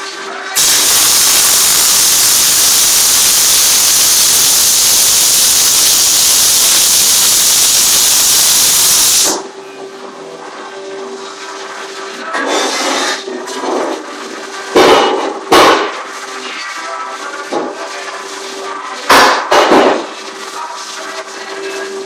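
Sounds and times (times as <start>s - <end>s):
radio: 0.6s - 9.4s
welding arc burning: 0.6s - 9.4s
fan hum: 0.6s - 9.5s.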